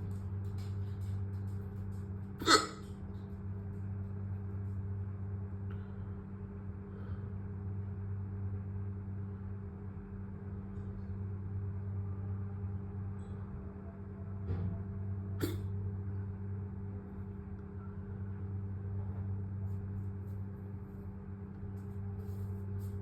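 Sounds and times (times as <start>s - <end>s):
steady low hum: 0.0s - 23.0s
sharp hiccup: 2.4s - 2.9s, 15.4s - 15.7s.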